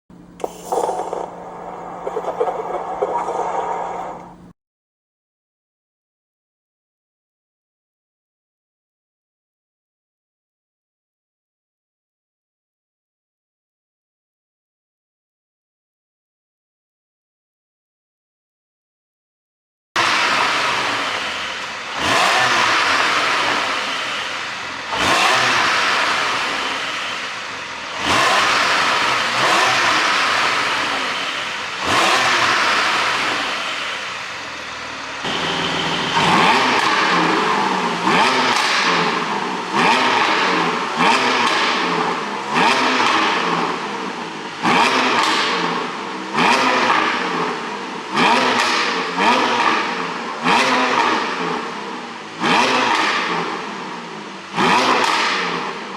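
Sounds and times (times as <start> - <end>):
car engine revving: 20.0 - 55.9.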